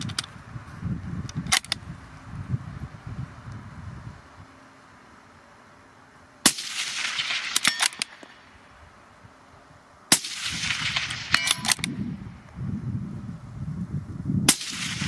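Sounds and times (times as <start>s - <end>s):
rifle bolt metallic clicks: 0.0s - 0.3s, 1.3s - 1.8s, 7.1s - 8.4s, 10.8s - 12.0s
rifle shots with echo: 6.4s - 8.6s, 10.1s - 12.0s, 14.5s - 15.0s.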